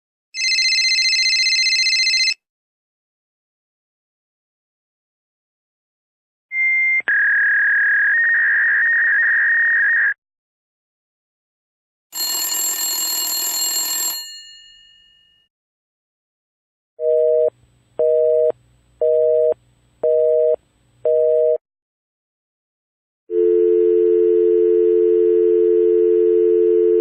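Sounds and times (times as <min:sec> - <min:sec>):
telephone bell ringing: 0:00.4 - 0:02.4, 0:12.2 - 0:15.5, 0:23.3 - 0:27.0
telephone dial tone: 0:00.4 - 0:02.4, 0:12.2 - 0:14.3, 0:23.3 - 0:27.0.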